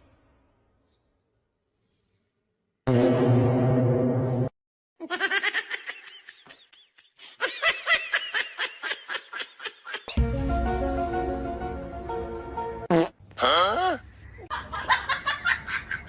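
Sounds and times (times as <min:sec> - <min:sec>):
music: 0:10.2 - 0:12.9.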